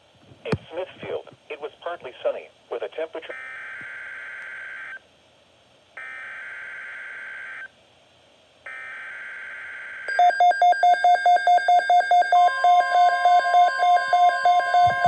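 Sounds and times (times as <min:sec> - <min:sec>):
high steady tone: 0:10.1 - 0:15.0.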